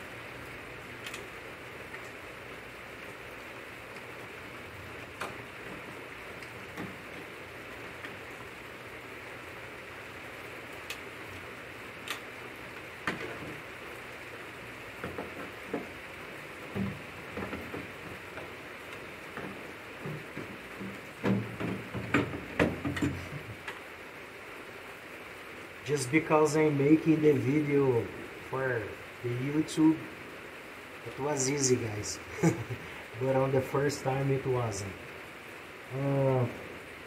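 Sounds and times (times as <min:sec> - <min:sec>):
steady hiss: 0:00.0 - 0:37.0
sharp clicks: 0:01.0 - 0:01.3, 0:12.0 - 0:12.3
small knocks of parts and tools: 0:15.0 - 0:16.0, 0:16.7 - 0:23.8.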